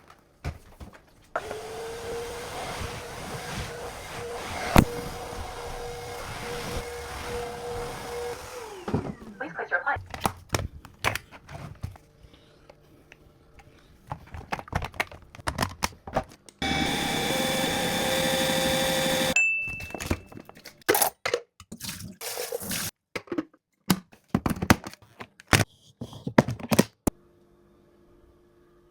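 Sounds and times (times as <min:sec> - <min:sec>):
vacuum motor running: 0:01.4 - 0:09.4, 0:16.6 - 0:19.4.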